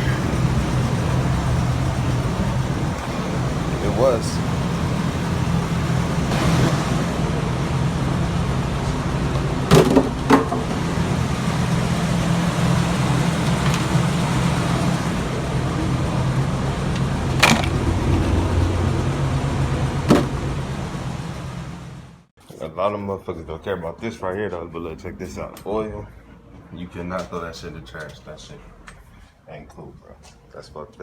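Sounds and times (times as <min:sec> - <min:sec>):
car engine idling: 0:00.0 - 0:22.3.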